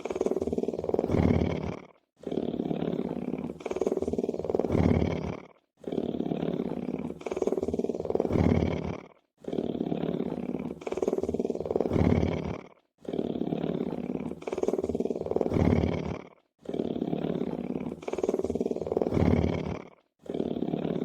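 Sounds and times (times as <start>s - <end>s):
lion purring: 0.0s - 21.0s.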